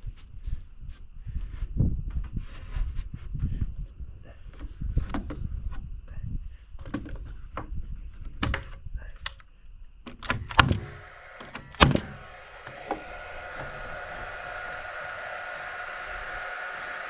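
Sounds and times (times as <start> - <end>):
steady hum with high whine: 10.4 - 17.0.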